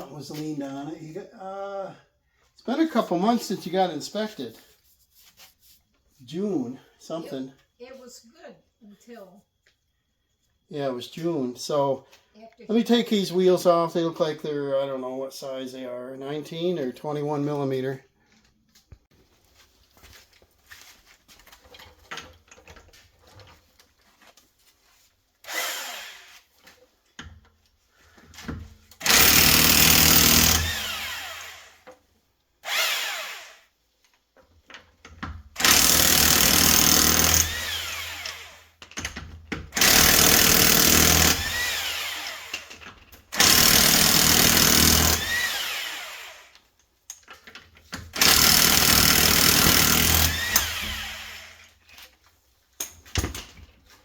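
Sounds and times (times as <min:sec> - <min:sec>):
impact wrench bursts: 0:29.0 - 0:31.8, 0:32.6 - 0:33.7, 0:35.6 - 0:38.7, 0:39.7 - 0:46.5, 0:48.1 - 0:51.7.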